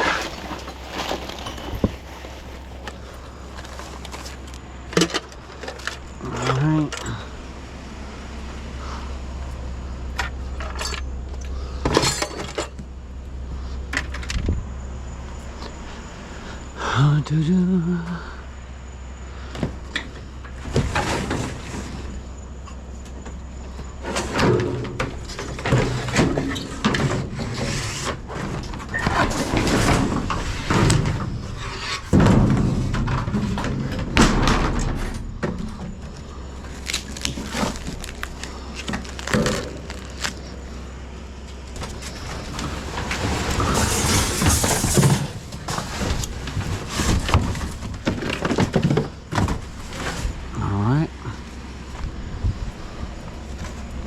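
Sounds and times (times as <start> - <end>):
steady low hum: 0.0 - 54.0
junk knocking and clattering: 9.0 - 13.0, 19.5 - 50.5.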